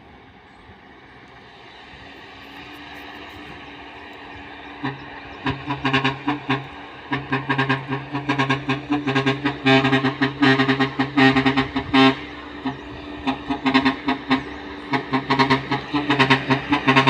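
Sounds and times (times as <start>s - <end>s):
truck musical horn honking: 4.4s - 17.0s.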